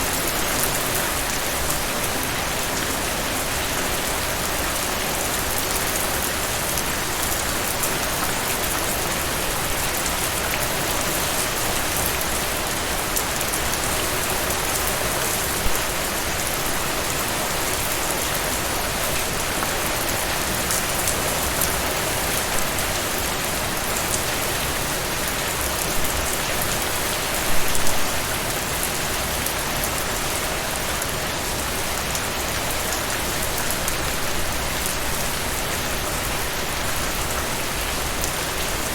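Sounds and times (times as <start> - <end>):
rain spatters: 0.0 - 38.9
steady rain falling: 0.0 - 38.9.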